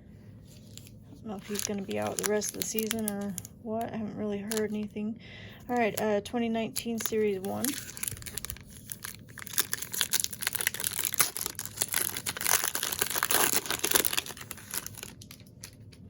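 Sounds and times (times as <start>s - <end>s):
wrapper crackling and rustling: 0.4s - 3.6s, 6.7s - 16.0s.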